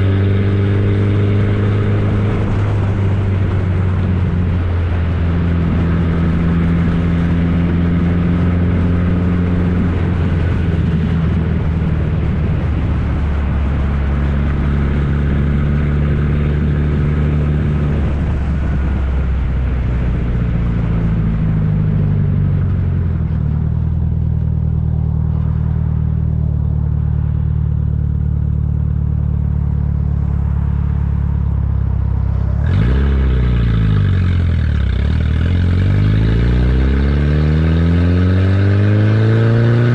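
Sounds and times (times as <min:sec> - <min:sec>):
loud engine exhaust: 0:00.0 - 0:39.9.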